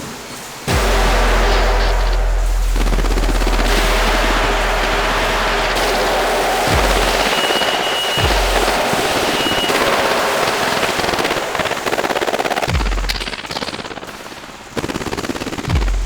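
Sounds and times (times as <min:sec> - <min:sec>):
fireworks crackling and banging: 0:00.6 - 0:14.8
deep falling bass boom: 0:00.7 - 0:09.1.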